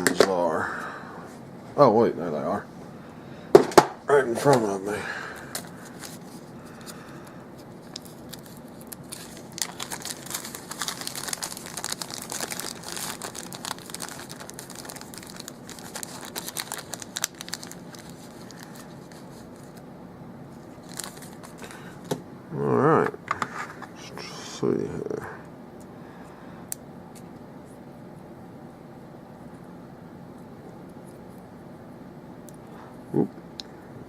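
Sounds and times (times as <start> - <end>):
packet crinkling and rustling: 5.4 - 19.9, 20.6 - 21.8.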